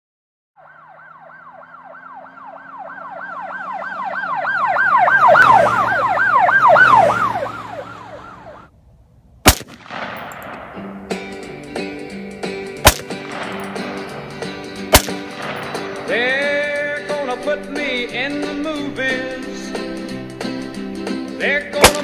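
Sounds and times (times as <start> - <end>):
siren in fast yelp: 0.6 - 8.7
sharp gunshot: 9.4 - 11.0, 12.8 - 14.2, 14.9 - 16.2, 21.8 - 22.0.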